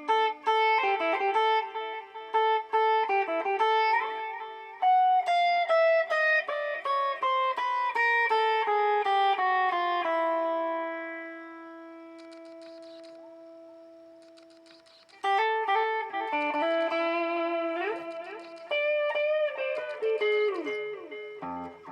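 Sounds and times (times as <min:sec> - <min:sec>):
guitar through delay pedal: 0:00.0 - 0:21.9.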